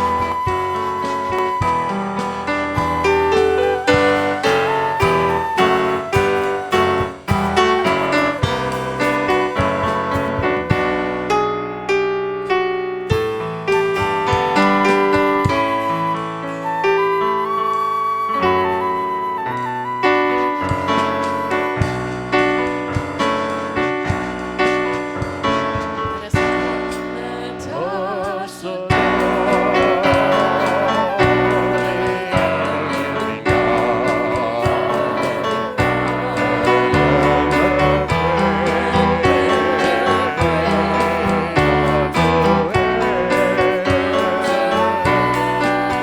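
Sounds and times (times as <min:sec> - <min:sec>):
person singing worship music: 0:00.0 - 0:11.4, 0:25.7 - 0:46.0
keyboard chords: 0:00.0 - 0:28.2, 0:28.8 - 0:46.0
fuller musical accompaniment: 0:00.0 - 0:46.0.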